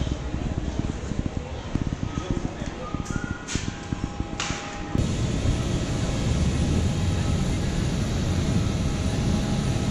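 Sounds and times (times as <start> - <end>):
airliner cabin noise: 3.0 - 9.9
steady rumble: 5.0 - 9.9.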